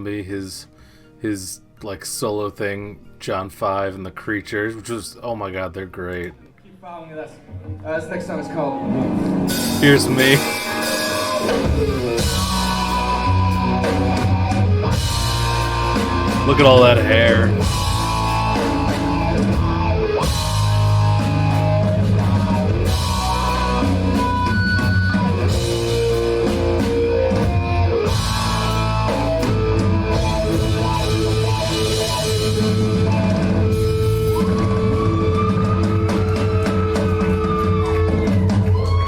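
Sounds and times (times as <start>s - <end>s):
rock band playing live: 8.8s - 38.9s.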